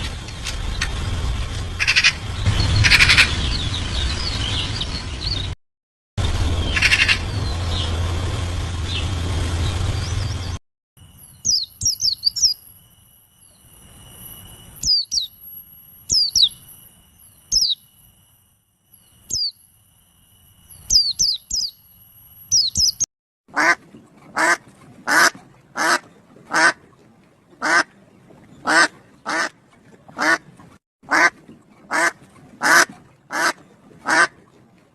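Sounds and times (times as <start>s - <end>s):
harsh bird calls: 1.8s - 5.5s, 6.6s - 7.9s
high falling bird chirps: 8.9s - 18.2s, 18.9s - 19.8s, 20.4s - 23.1s.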